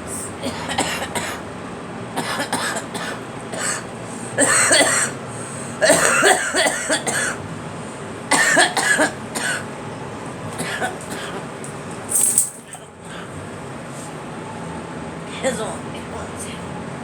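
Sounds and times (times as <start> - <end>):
girl coughing: 0.2 - 1.4, 2.2 - 5.2, 5.8 - 7.4, 8.3 - 9.7, 10.6 - 11.5.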